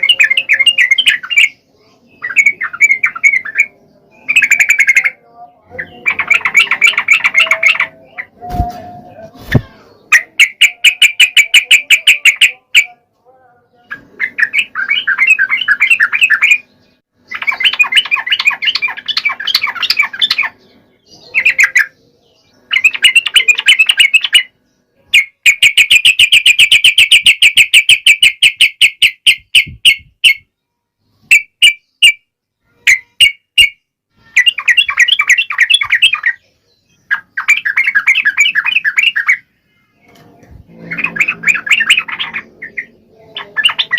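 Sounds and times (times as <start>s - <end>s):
bulbul singing chattering phrases: 0.0s - 30.5s, 31.3s - 43.9s.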